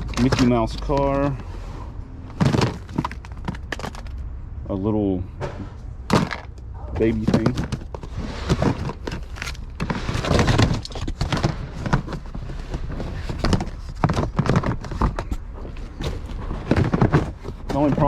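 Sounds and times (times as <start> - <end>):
toys and containers clattering: 0.0 - 1.5, 2.2 - 4.3, 5.4 - 18.0.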